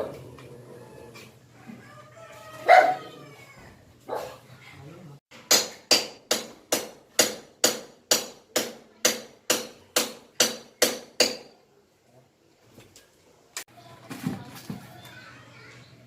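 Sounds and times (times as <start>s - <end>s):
hammer striking: 5.3s - 11.6s.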